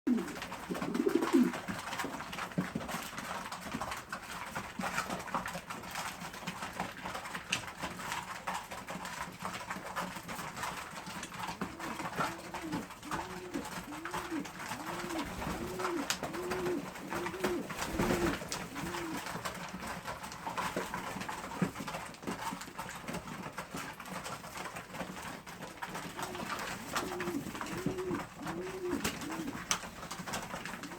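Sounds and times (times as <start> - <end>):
pigeons cooing: 0.1 - 1.6, 11.4 - 19.4, 25.8 - 30.9.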